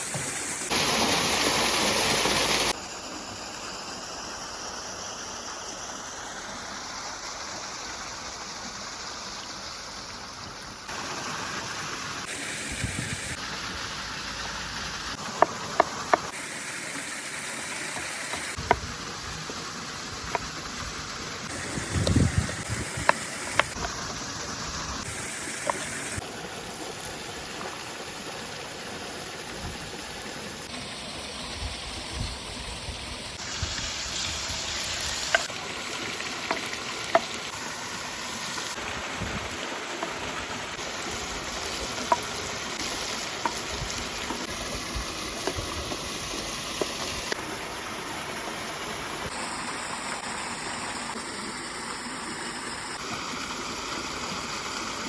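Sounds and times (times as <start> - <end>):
waterfall rushing: 21.1 - 26.3.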